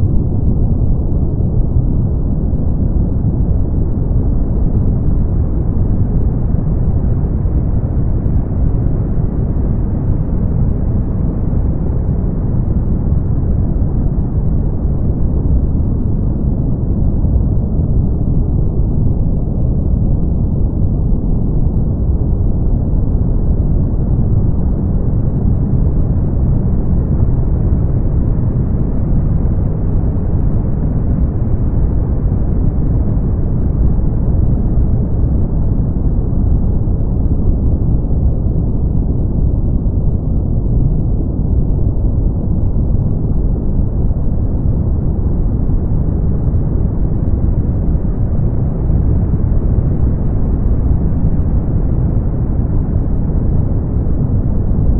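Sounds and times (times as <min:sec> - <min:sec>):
deep rumbling brown noise: 0:00.0 - 0:54.9.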